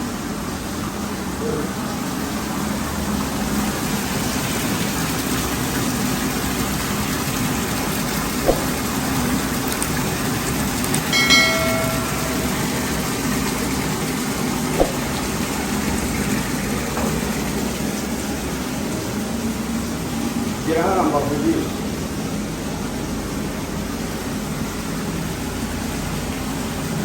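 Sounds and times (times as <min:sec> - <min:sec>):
water rushing down a drain: 0:02.2 - 0:11.2
brief high tone: 0:11.1 - 0:13.4.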